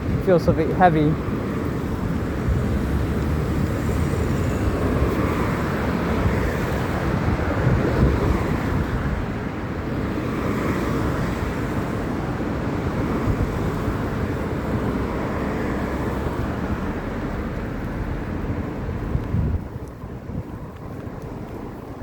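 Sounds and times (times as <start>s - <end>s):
bicycle road noise: 0.0s - 22.0s
car traffic passing: 0.0s - 22.0s
wind rush on microphone: 0.0s - 22.0s.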